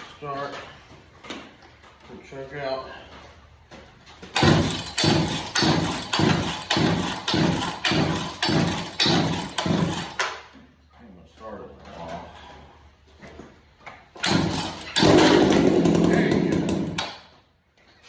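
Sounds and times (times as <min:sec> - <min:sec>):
chainsaw pull-start turning over: 0:04.3 - 0:10.4, 0:14.2 - 0:17.3.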